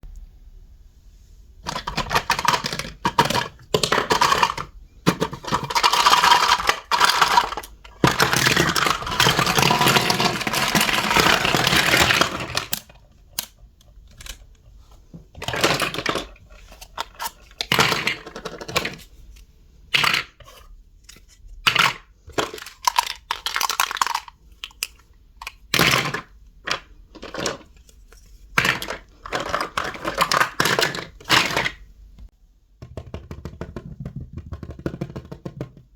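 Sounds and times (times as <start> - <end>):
toy pieces clicking and clattering: 1.6 - 14.6, 15.4 - 19.1, 19.9 - 20.6, 21.7 - 28.0, 28.6 - 31.8.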